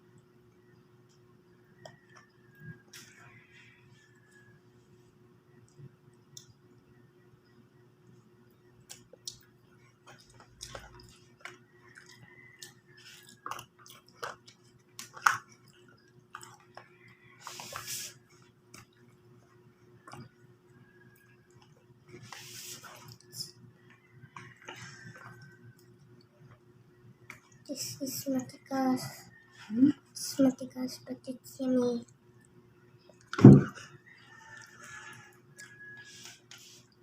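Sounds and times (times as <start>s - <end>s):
chewing: 8.8s - 26.6s, 32.4s - 37.0s.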